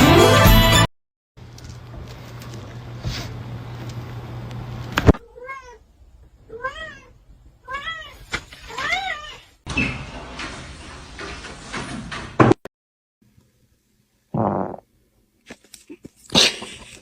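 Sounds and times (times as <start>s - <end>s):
cat meowing: 5.2s - 5.8s, 6.5s - 9.5s.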